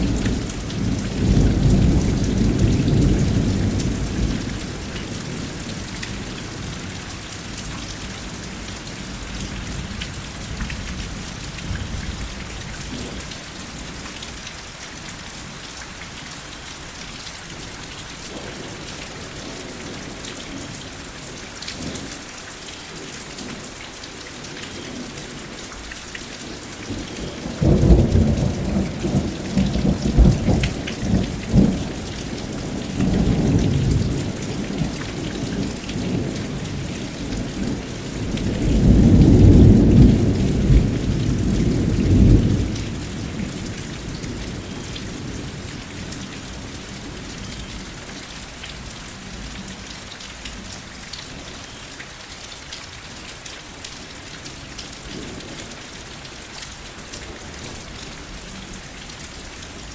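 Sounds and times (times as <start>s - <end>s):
steady rain: 0.0s - 59.9s
deep roll of thunder: 27.3s - 45.6s.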